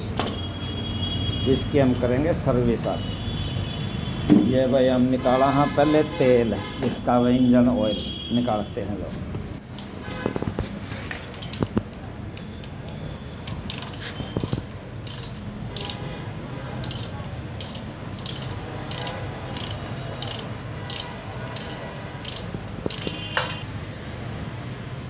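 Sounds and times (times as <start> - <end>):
ratchet wrench clicking: 11.3 - 11.7, 12.4 - 16.2, 16.8 - 23.6.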